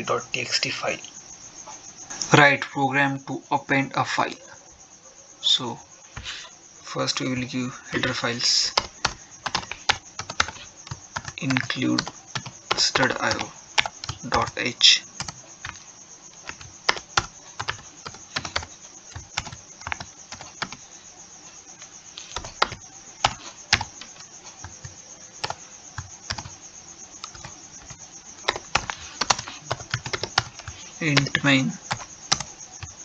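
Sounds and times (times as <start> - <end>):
typing on computer keyboard: 8.0 - 14.6, 16.4 - 20.8, 22.3 - 26.5, 27.2 - 32.5.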